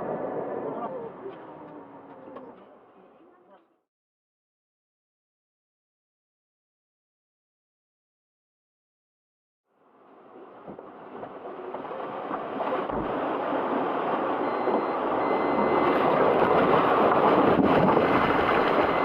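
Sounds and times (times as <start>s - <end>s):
steady rushing noise: 9.8s - 19.0s.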